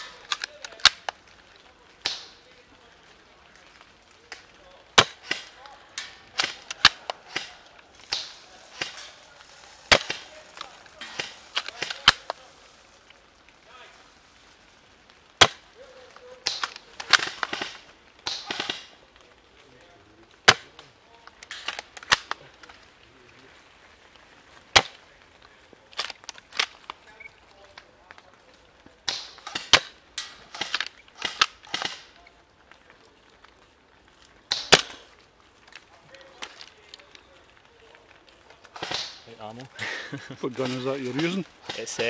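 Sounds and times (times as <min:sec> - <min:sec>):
airsoft guns firing: 0:04.9 - 0:12.5, 0:15.4 - 0:19.0, 0:20.4 - 0:20.8, 0:24.7 - 0:25.0, 0:29.0 - 0:32.2, 0:34.5 - 0:35.1, 0:38.6 - 0:39.2, 0:40.6 - 0:42.0
airsoft gun shots: 0:16.4 - 0:18.9, 0:38.8 - 0:39.2.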